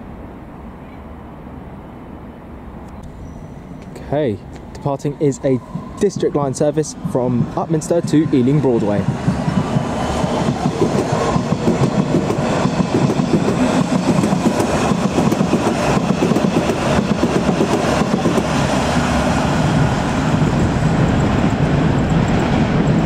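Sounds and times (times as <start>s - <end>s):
train wheels rumbling on rail: 2.7s - 23.0s
train wheel clicks: 5.6s - 18.6s.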